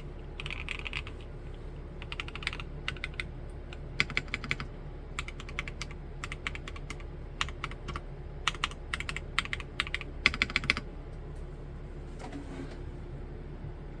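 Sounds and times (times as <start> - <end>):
mechanical keyboard typing: 0.0 - 1.2, 2.0 - 10.9.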